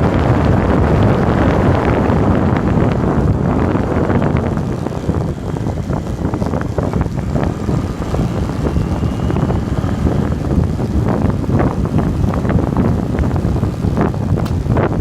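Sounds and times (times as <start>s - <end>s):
wind buffeting microphone: 0.0s - 15.0s
bike clicks and rattles: 4.0s - 8.7s, 9.4s - 15.0s.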